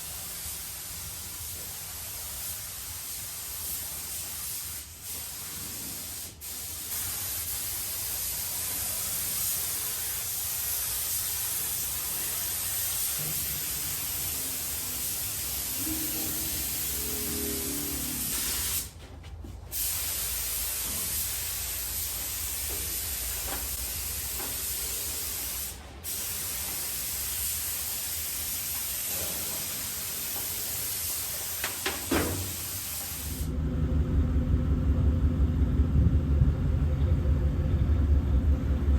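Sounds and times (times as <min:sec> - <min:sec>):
spray gun hissing: 0:00.0 - 0:19.0, 0:19.7 - 0:33.5
low rumble: 0:15.7 - 0:18.5, 0:33.5 - 0:38.9.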